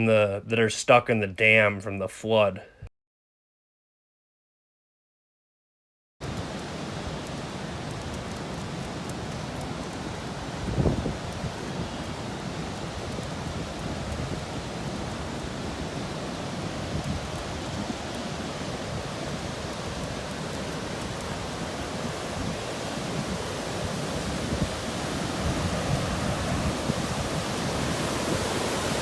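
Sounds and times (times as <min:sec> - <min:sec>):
water rushing over a dam: 0:06.2 - 0:29.0.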